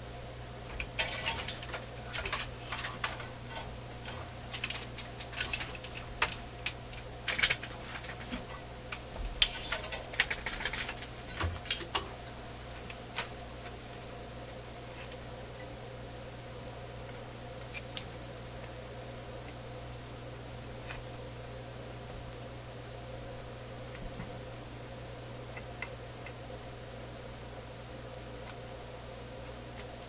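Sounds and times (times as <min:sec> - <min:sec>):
steady low hum: 0:00.0 - 0:30.0
small tools clicking and tapping: 0:00.7 - 0:14.0.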